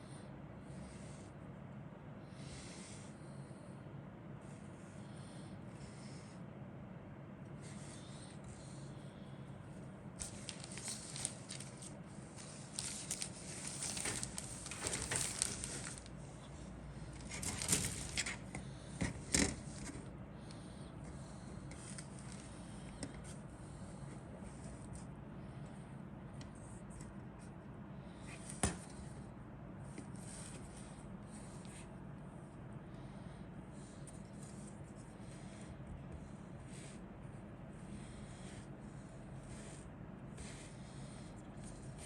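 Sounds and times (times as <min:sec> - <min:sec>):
steady low hum: 0:00.0 - 0:42.0
plastic bags and paper crinkling: 0:10.2 - 0:16.3, 0:17.2 - 0:18.5.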